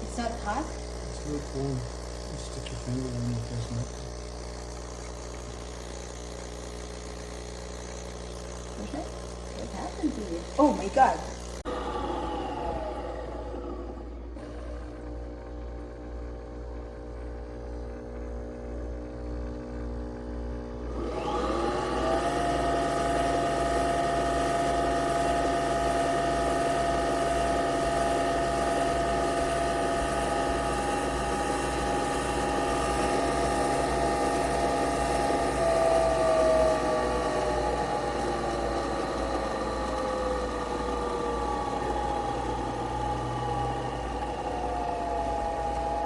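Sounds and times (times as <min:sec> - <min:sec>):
small electric motor whirring: 0:00.0 - 0:46.0.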